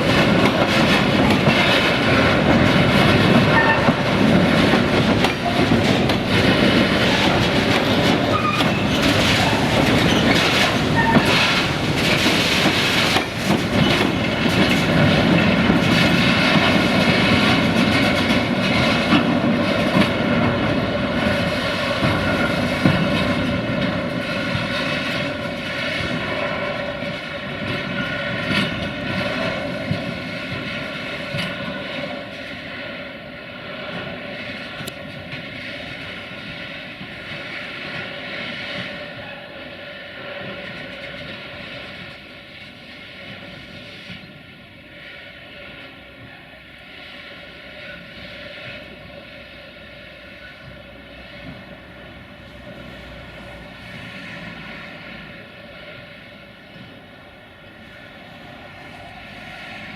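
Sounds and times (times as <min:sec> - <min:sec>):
train wheels clickety-clack: 0:00.0 - 0:59.9
train wheels squealing: 0:03.4 - 0:04.1, 0:08.2 - 0:11.7, 0:49.8 - 0:51.5.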